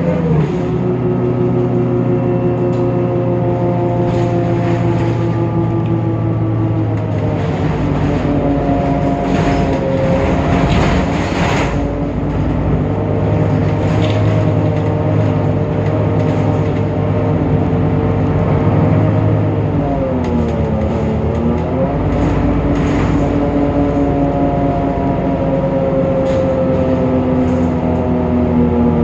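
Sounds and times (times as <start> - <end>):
bus engine running: 0.0 - 29.0
whining tones rising and falling: 0.0 - 29.0.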